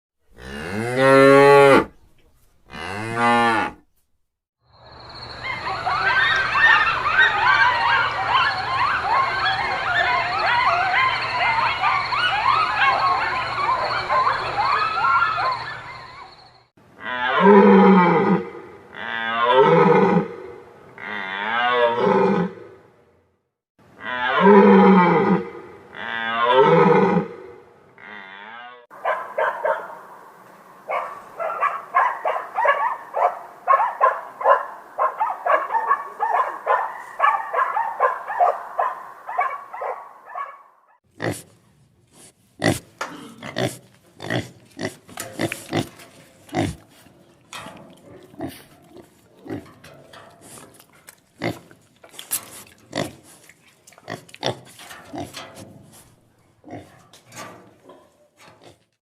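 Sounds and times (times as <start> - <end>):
short grunts: 43.0 - 43.8.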